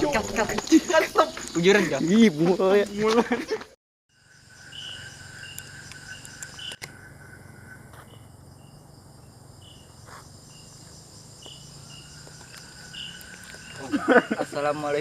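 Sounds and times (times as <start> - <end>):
crickets and insects trilling: 0.0 - 3.5, 4.1 - 15.0.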